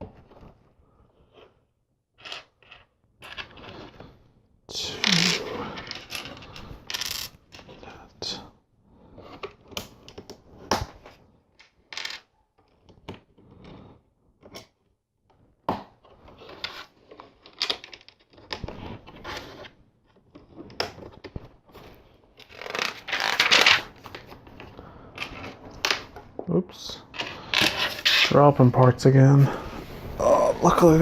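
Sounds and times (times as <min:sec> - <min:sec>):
plastic rattling and rustling: 0:16.1 - 0:26.4.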